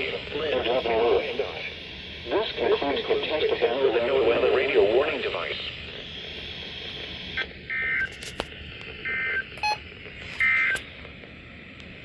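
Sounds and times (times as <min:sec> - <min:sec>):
faint radio hiss: 0:00.0 - 0:08.0.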